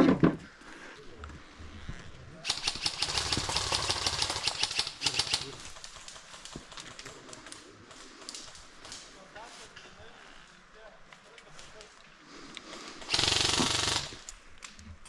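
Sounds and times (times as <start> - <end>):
airsoft guns firing full auto: 2.4 - 6.9, 13.0 - 14.3
faint scattered shots: 2.4 - 9.0.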